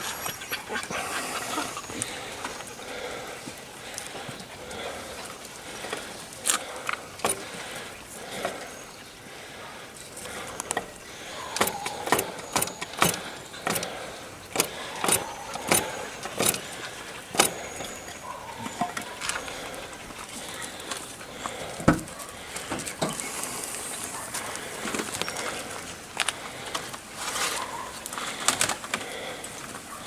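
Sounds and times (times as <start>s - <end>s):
sharp metallic clinks and knocks: 10.7s - 19.2s.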